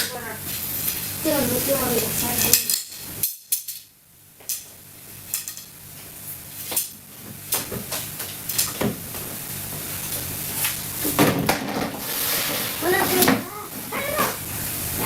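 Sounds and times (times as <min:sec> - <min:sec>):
steady hiss: 0:00.0 - 0:15.0.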